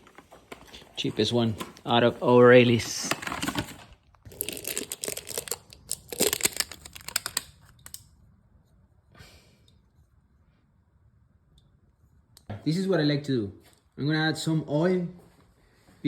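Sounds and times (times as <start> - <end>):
packaging crinkling and rustling: 0.0 - 8.0.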